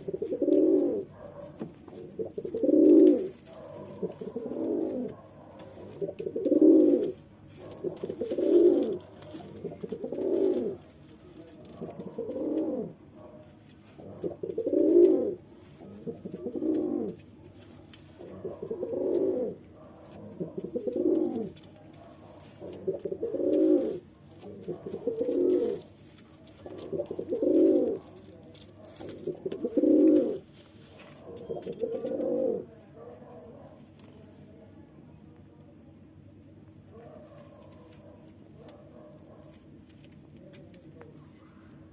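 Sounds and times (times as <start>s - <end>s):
pigeon cooing: 0.0s - 33.5s.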